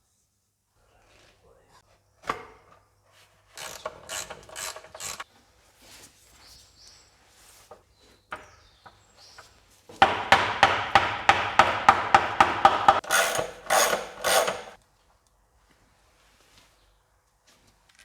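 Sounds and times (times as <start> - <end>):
rasping ratchet runs: 3.6 - 5.2, 12.8 - 14.8
ratchet clicking: 3.6 - 5.2, 12.9 - 14.8.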